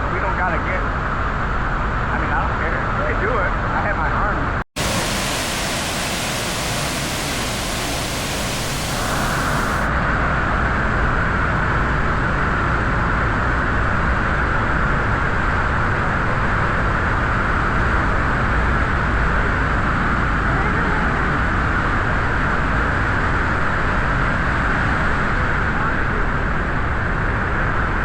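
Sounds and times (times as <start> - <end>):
waterfall rushing: 4.8 - 9.9.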